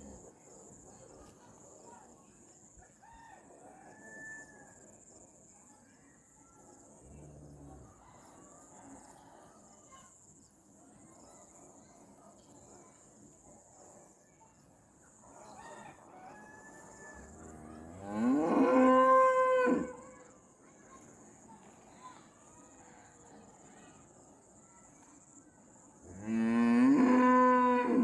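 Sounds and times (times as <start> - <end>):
distant rooster crowing: 15.5 - 17.4.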